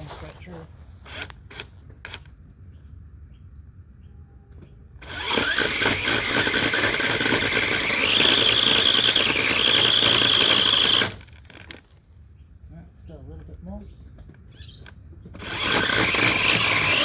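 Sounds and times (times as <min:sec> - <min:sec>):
electric chainsaw cutting wood: 0:01.1 - 0:02.2, 0:05.0 - 0:11.8, 0:15.4 - 0:17.0.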